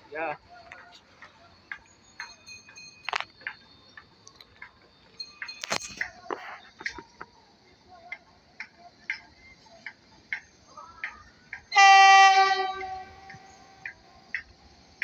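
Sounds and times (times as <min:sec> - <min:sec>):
train horn blast: 0:11.7 - 0:13.8.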